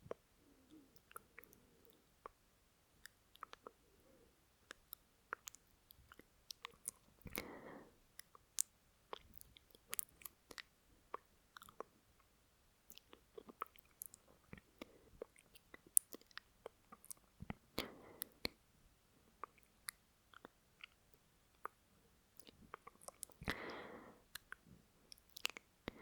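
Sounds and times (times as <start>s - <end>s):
wet mouth clicks: 0.1s - 2.4s, 3.0s - 3.8s, 4.6s - 7.5s, 8.2s - 11.9s, 12.9s - 18.6s, 19.4s - 21.8s, 22.4s - 26.0s
short breath: 7.4s - 8.0s, 23.5s - 24.3s.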